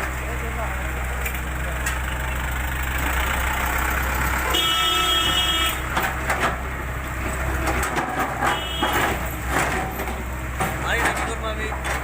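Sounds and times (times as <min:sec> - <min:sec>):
engine humming: 0:00.0 - 0:12.0
vehicle horn: 0:04.4 - 0:05.8, 0:08.4 - 0:09.2.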